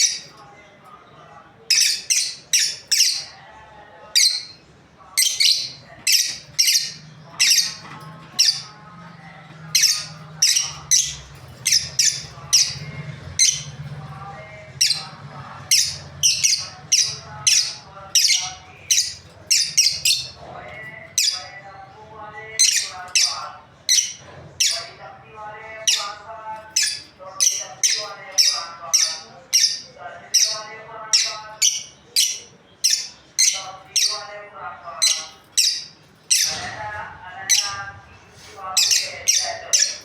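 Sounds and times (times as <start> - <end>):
lovebirds chirping shrilly: 9.7 - 13.9, 14.8 - 20.4.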